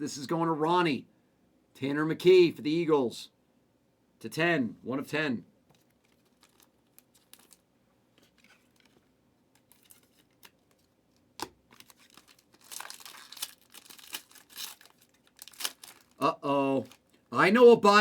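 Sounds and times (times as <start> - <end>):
plastic wrapper crinkling and tearing: 5.8 - 17.3.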